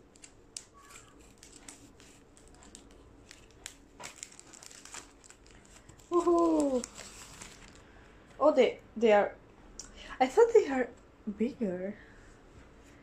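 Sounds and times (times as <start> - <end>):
small clicks and crackles: 0.0 - 7.8
paper and plastic packaging rustling: 0.0 - 8.2.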